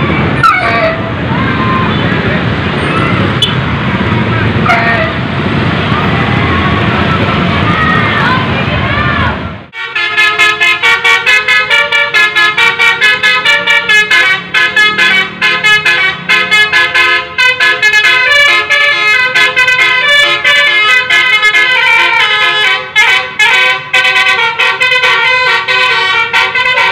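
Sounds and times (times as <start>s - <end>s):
street noise: 0.0s - 26.9s
multi-tone horn melody: 4.6s - 5.3s, 9.7s - 26.9s.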